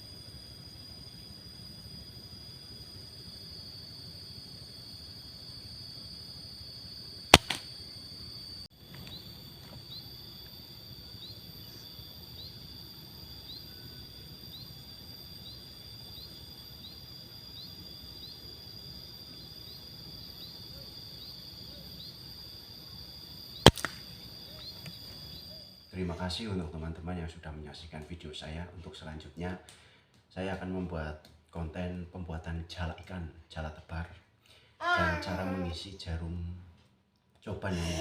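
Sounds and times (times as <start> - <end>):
insect drone: 0.0 - 36.6, 37.4 - 38.0
air rifle shots: 7.3 - 7.7, 23.6 - 24.1.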